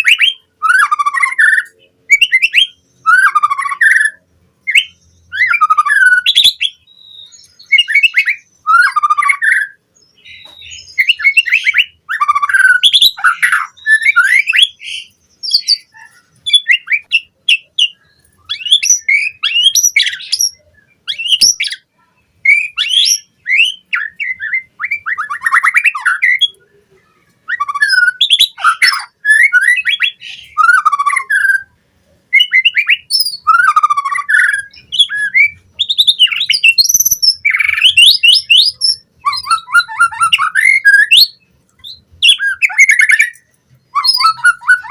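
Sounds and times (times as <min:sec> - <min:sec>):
songbird singing: 0:00.0 - 0:44.9.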